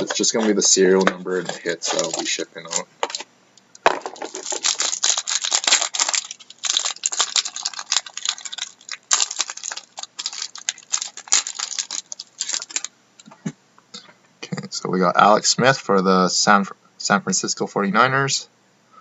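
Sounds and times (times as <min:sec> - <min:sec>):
wrapper crinkling and tearing: 0:00.0 - 0:03.3, 0:03.9 - 0:12.9.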